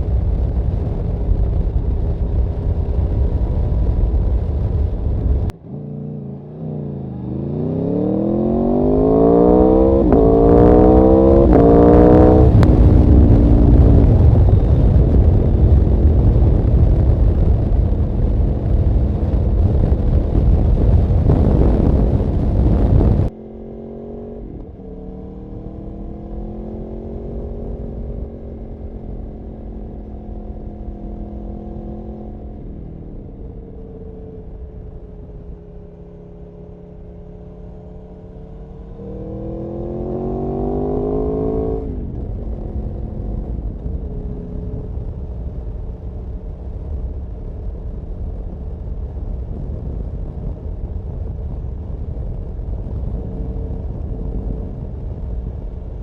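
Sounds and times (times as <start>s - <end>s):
motorcycle engine revving: 3.3s - 46.5s.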